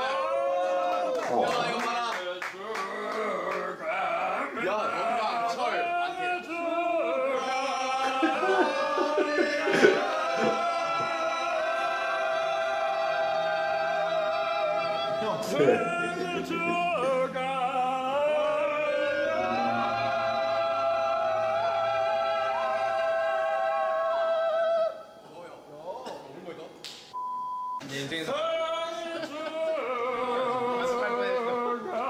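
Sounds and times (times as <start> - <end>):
person singing long notes: 3.0 - 25.1.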